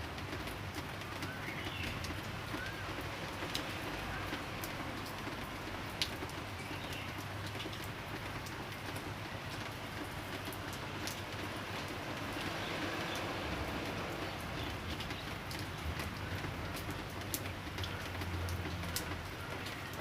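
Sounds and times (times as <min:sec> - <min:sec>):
light drizzle falling: 0:00.0 - 0:20.0
drops ticking on a surface: 0:12.3 - 0:20.0.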